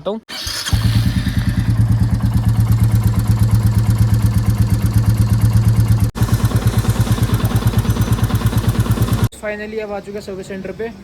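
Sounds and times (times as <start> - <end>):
motorcycle engine idling: 0.3 - 9.3.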